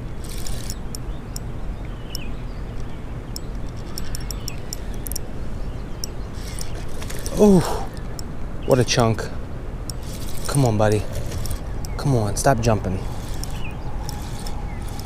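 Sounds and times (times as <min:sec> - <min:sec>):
sharp high ticks: 0:00.0 - 0:01.5, 0:02.1 - 0:05.3, 0:05.9 - 0:08.3, 0:09.8 - 0:12.1, 0:13.0 - 0:15.0.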